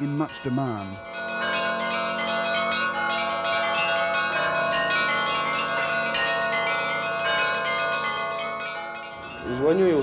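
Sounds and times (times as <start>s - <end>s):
church bells pealing: 0.0s - 10.0s.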